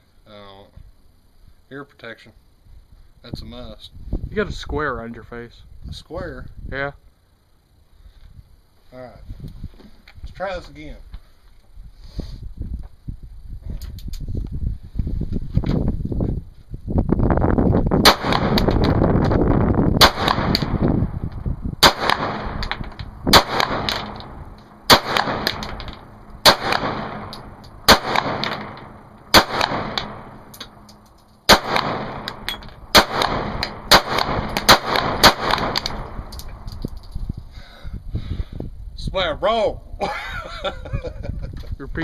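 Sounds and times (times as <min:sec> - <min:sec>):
handgun shots echoing: 0:18.0 - 0:19.0, 0:20.0 - 0:20.8, 0:21.8 - 0:36.8.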